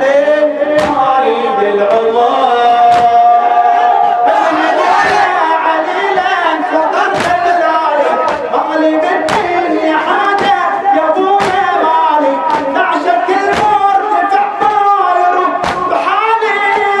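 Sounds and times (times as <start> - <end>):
voices chanting mournful refrain: 0.0 - 17.0
chest-beating thumps: 0.8 - 1.2, 2.9 - 3.4, 7.1 - 14.9, 15.5 - 16.9.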